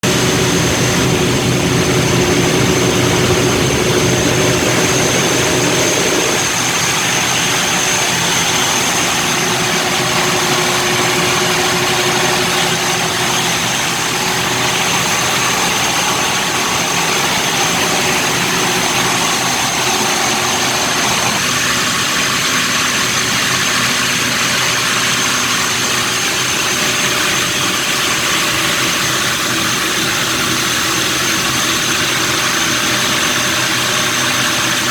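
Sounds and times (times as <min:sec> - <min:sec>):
thin high whine: 0:00.0 - 0:22.1
ferry engines running: 0:00.0 - 0:34.9.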